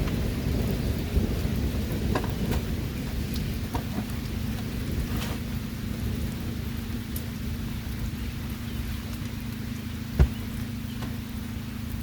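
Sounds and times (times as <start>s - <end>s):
rain falling: 0.0s - 12.0s
light knocks and clicks: 10.2s - 11.2s.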